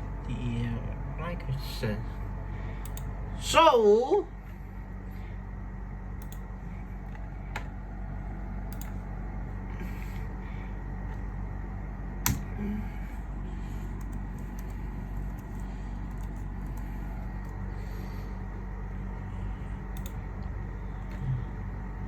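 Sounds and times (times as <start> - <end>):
low electrical hum: 0.0 - 22.0
sharp clicks: 2.8 - 3.1, 6.2 - 6.5.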